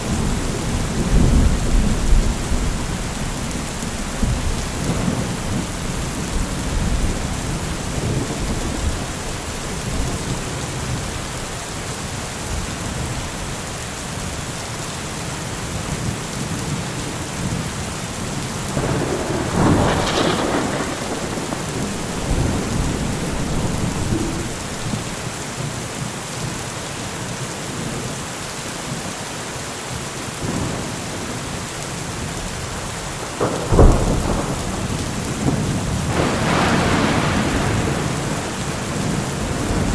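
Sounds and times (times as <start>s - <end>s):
rolling thunder: 0.0s - 11.5s, 18.7s - 25.4s, 33.2s - 39.9s
heavy rain: 0.0s - 39.9s
sharp thunderclap: 18.7s - 25.3s, 33.2s - 39.9s.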